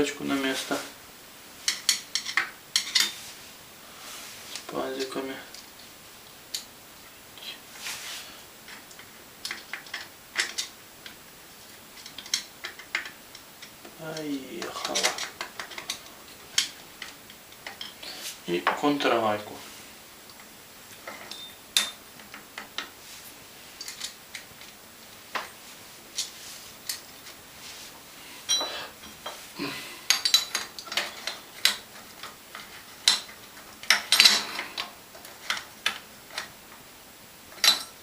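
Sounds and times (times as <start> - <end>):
metal tools clicking and clinking: 1.7 - 3.2, 14.6 - 18.0, 21.0 - 22.9, 28.4 - 29.4, 30.1 - 36.5, 37.5 - 38.0.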